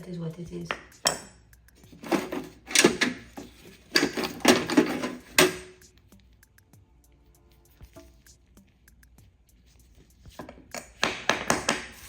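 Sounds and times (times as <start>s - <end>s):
metal hand tools clattering in toolbox: 1.9s - 5.8s.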